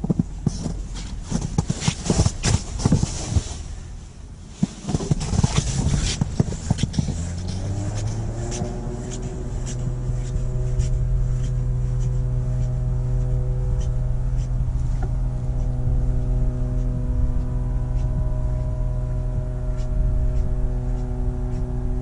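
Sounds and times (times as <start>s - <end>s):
engine running at high speed: 4.9s - 22.0s.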